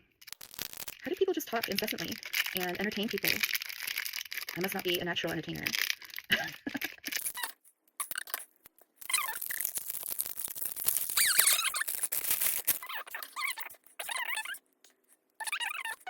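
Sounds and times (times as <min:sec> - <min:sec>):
wrapping rustling and crinkling: 0:00.1 - 0:16.0
high wavering squeaks: 0:07.2 - 0:08.4, 0:09.0 - 0:14.6, 0:15.4 - 0:16.0.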